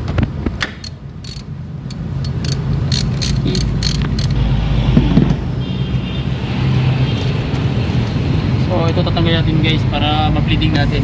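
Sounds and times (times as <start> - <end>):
ratchet wrench clicking: 0.6 - 4.4.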